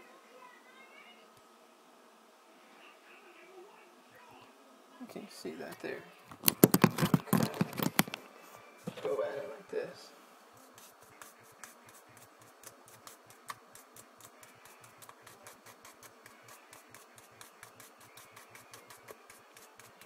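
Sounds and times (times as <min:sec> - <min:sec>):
toothbrush scrubbing: 0:10.6 - 0:20.0.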